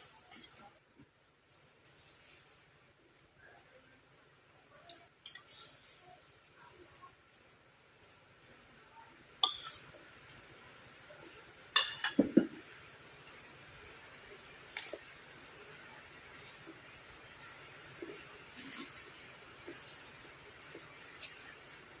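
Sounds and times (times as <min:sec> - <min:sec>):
cutlery clinking against bowl: 0:05.2 - 0:05.6, 0:09.4 - 0:10.0, 0:11.7 - 0:12.5.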